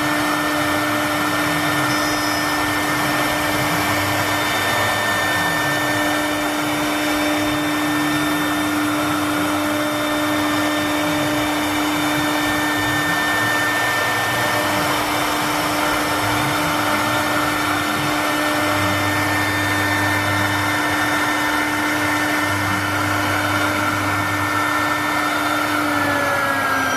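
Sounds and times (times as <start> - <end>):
wood router spindle whine: 0.0 - 26.9
low motor tones gliding: 0.4 - 26.9.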